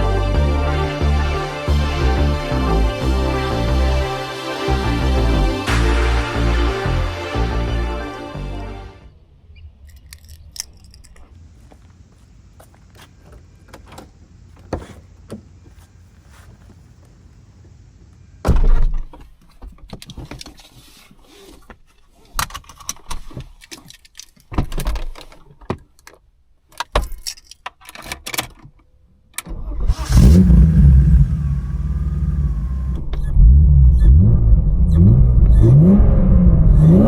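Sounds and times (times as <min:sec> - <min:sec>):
keys jangling: 0:09.8 - 0:11.3
car engine starting and idling: 0:29.5 - 0:37.0.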